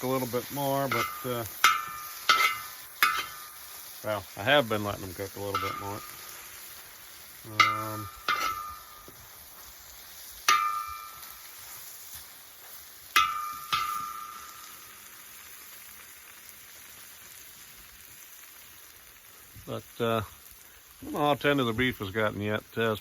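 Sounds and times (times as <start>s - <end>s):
meat and vegetables sizzling: 0.0s - 23.0s
metal utensil striking pan: 0.8s - 3.7s, 5.4s - 6.4s, 7.5s - 9.2s, 10.4s - 11.5s, 13.1s - 15.0s.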